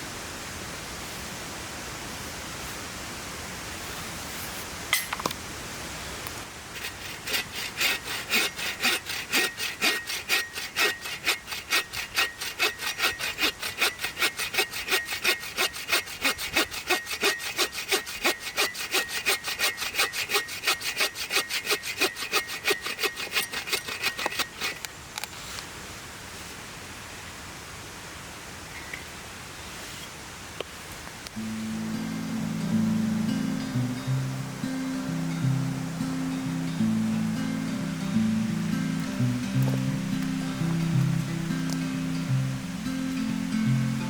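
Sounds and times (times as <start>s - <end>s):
hand saw cutting wood: 6.7s - 24.9s, 36.8s - 44.0s
river rushing: 31.4s - 44.0s.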